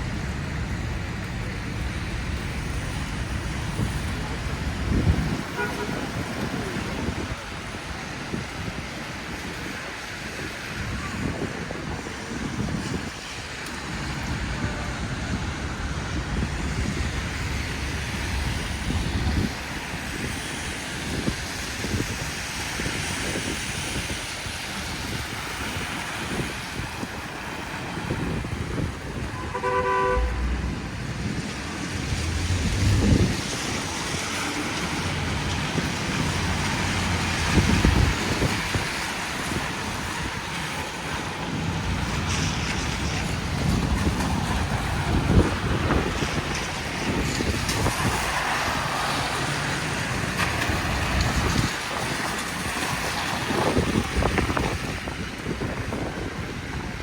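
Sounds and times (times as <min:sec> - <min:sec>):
vehicle traffic: 0:00.0 - 0:57.0
car horn honking: 0:05.5 - 0:06.2, 0:29.4 - 0:30.7.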